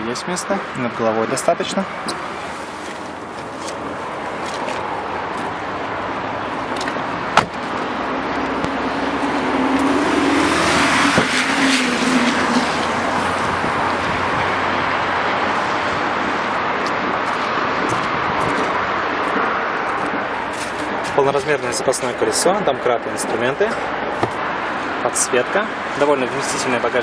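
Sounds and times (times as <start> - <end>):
road traffic noise: 0.0 - 27.0
vehicle passing with low hum: 1.8 - 21.2
sharp knock: 24.2 - 24.4.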